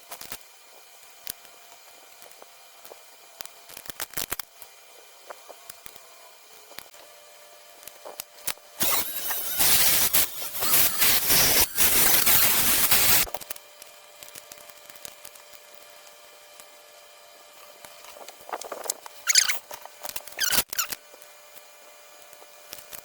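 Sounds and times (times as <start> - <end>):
rotary tool grinding circuit board: 8.8 - 13.4, 19.2 - 21.0.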